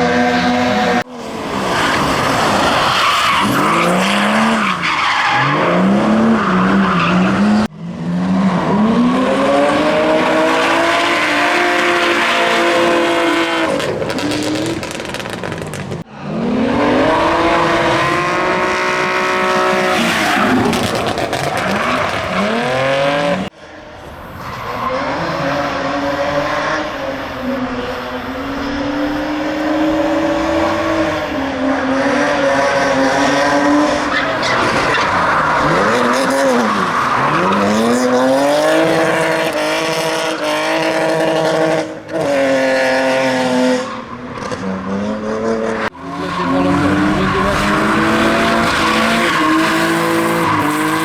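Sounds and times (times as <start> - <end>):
car engine at high revs: 3.4 - 51.0.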